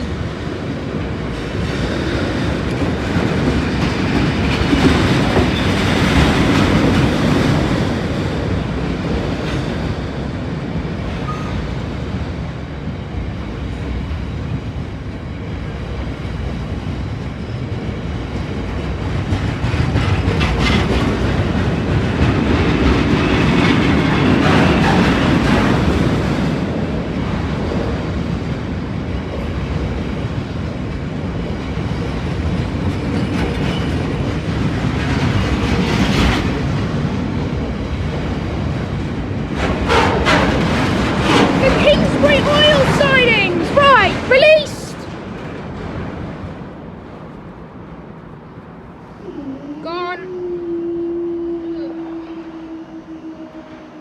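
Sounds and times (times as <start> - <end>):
freight train wheels clattering: 1.3 - 11.9, 17.8 - 26.9, 29.5 - 46.7.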